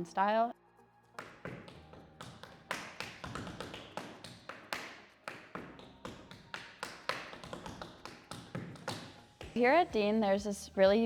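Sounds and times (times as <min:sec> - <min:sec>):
tap shoes on hard floor: 0:01.2 - 0:09.8.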